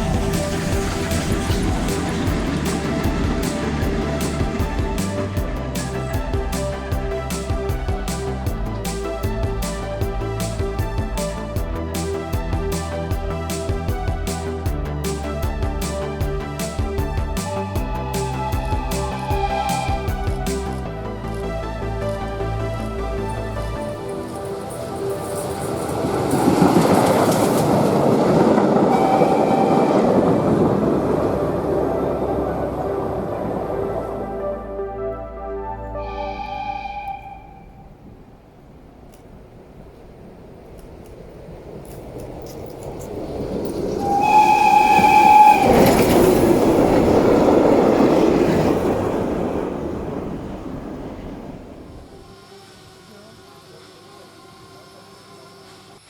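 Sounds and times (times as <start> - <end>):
train passing: 0.0 - 56.0
steady high tone: 15.1 - 27.4, 28.8 - 38.1
steam locomotive whistle: 18.1 - 20.8, 28.6 - 32.7, 36.0 - 38.0, 43.9 - 47.6
train wheels clattering on rails: 24.2 - 30.6.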